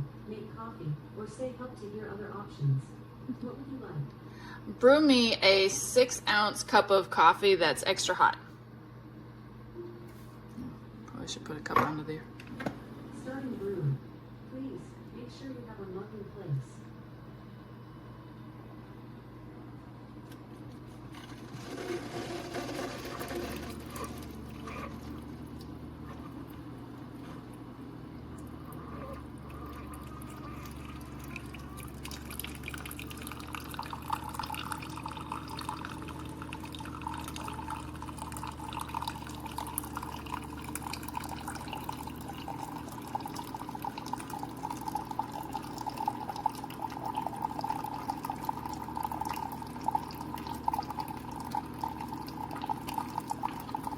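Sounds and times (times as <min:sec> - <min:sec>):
coffee maker pump hum: 0:17.7 - 0:53.9
coffee streaming into mug: 0:20.8 - 0:53.9.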